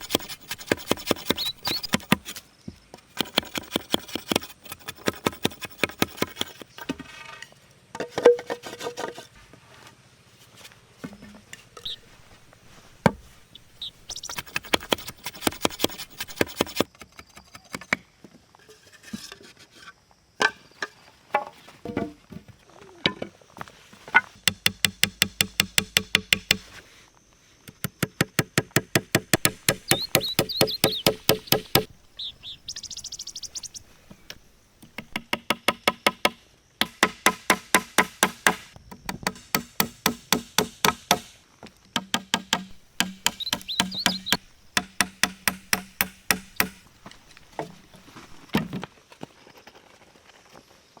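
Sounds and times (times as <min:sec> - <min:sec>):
rapid sharp knocking: 0:28.6 - 0:31.9, 0:42.1 - 0:47.8.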